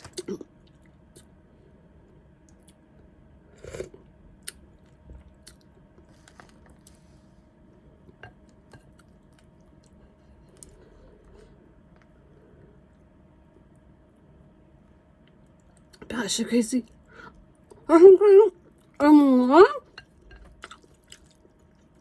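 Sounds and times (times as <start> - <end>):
chewing noodle soup: 2.4 - 14.0, 20.0 - 22.0.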